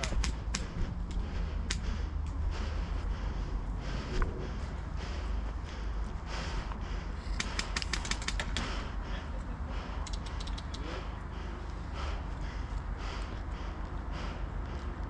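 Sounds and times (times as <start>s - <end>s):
low rumble: 0.0s - 7.4s.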